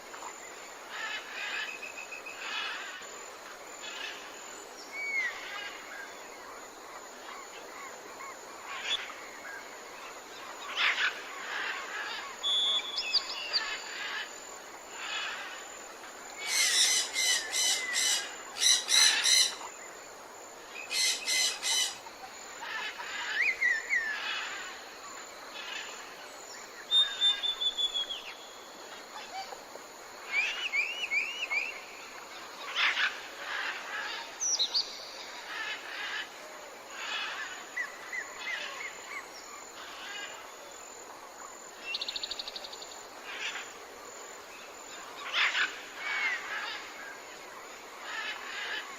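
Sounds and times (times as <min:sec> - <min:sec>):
background hiss: 0:00.0 - 0:48.9
birds whistling and chirping: 0:12.4 - 0:13.6, 0:26.9 - 0:28.3
birds squawking: 0:16.5 - 0:19.6.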